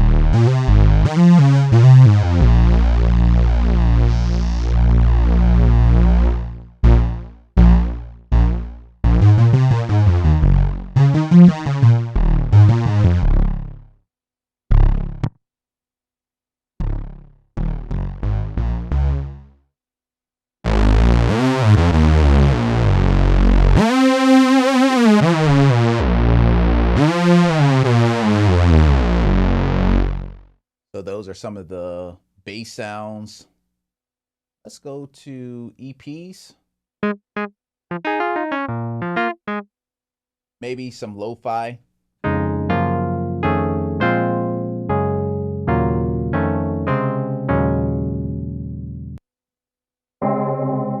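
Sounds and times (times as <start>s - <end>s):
synthesizer bass notes: 0.0s - 13.9s, 14.7s - 15.4s, 16.8s - 19.5s, 20.7s - 30.5s, 37.0s - 39.7s.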